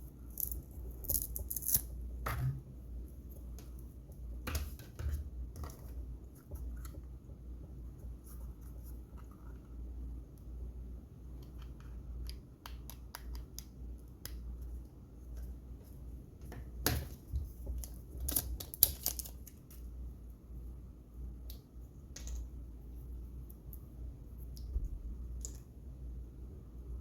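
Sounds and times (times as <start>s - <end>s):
small clicks and handling noises: 11.4s - 19.9s
low steady rumble: 19.4s - 27.0s.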